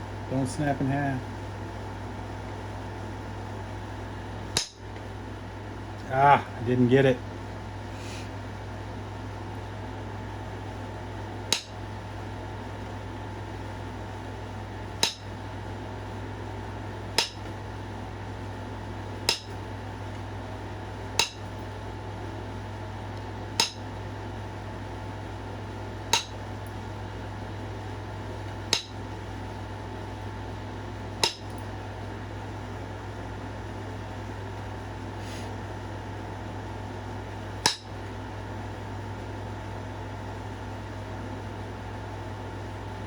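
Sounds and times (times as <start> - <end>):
steady low hum: 0.0 - 43.0
stone tool striking stone: 4.6 - 4.8, 11.5 - 11.8, 15.0 - 15.3, 17.2 - 17.5, 19.2 - 19.6, 21.2 - 21.5, 23.6 - 23.9, 26.1 - 26.4, 28.7 - 29.0, 31.2 - 31.6, 37.6 - 37.9.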